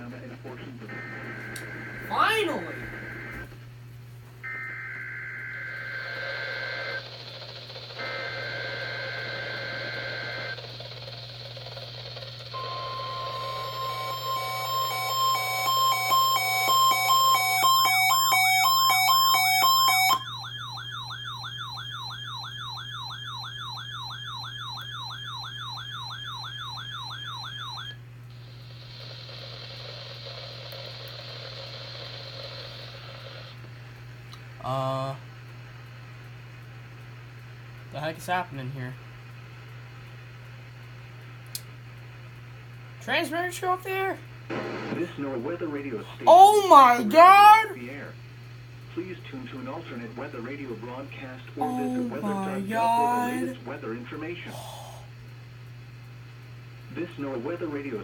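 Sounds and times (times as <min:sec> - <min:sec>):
warbling alarm: 0:04.5 - 0:07.9, 0:12.6 - 0:28.0.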